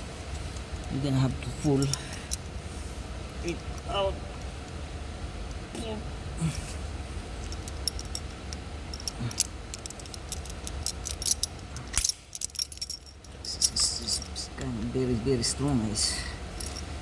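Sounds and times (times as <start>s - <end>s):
low steady hum: 0.0s - 17.0s
metallic clicks and rattles: 7.4s - 14.7s, 16.6s - 16.9s.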